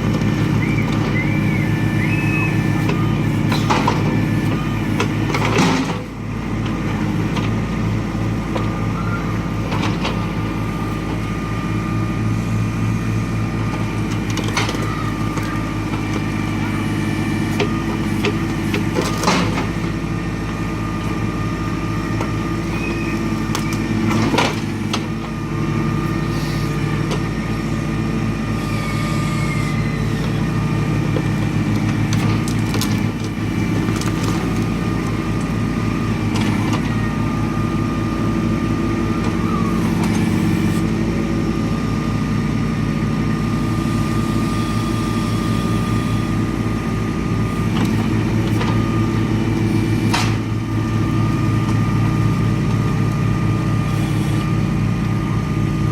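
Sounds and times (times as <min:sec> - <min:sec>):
steady high whine: 0:00.0 - 0:05.4
tractor diesel engine running: 0:00.0 - 0:55.9.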